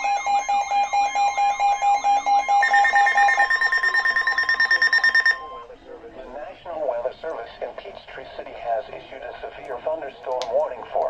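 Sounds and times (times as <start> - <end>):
rapid pulsing beep: 0.0 - 5.7
steady high alert tone: 0.0 - 5.8.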